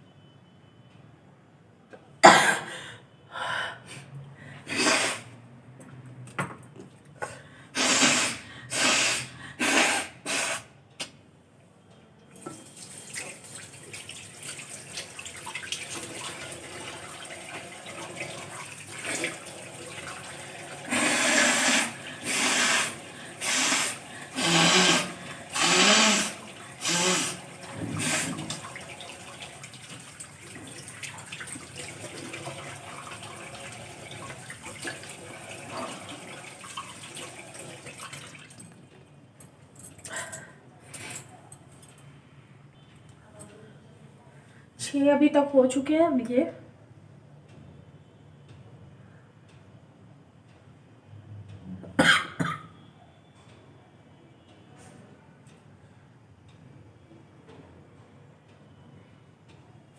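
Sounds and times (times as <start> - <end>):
forceful nose blowing: 4.6 - 5.4, 7.7 - 10.8, 20.9 - 28.5
tap water running: 7.8 - 10.5, 12.3 - 39.0.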